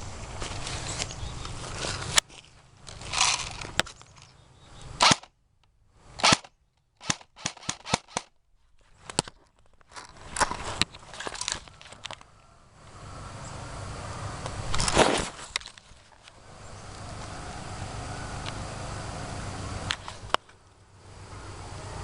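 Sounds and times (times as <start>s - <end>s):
airsoft gun shots: 5.0s - 5.3s, 6.2s - 8.3s.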